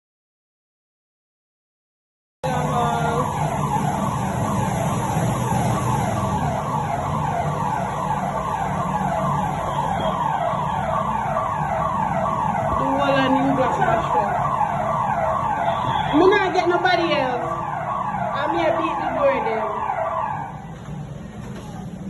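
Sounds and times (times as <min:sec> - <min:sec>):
siren in rapid falling sweeps: 0:02.4 - 0:21.9.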